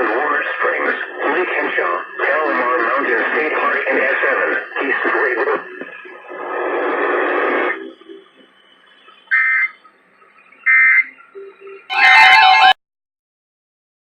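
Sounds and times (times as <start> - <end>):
radio audio: 0.0 - 12.8
two-tone digital data bursts: 5.6 - 12.8.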